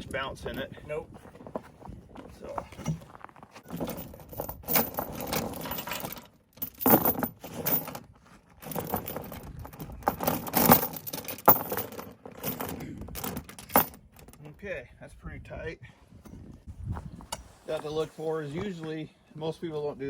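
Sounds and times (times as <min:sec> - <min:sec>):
metal chains clinking and rattling: 0:02.8 - 0:14.4.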